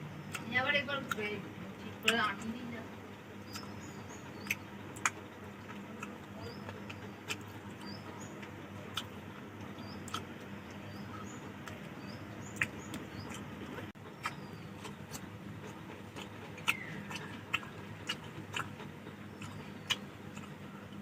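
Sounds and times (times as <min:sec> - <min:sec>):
chewing and lip smacks: 0:03.5 - 0:03.8, 0:04.4 - 0:21.0
mouth clicks: 0:03.5 - 0:03.8, 0:04.4 - 0:20.6.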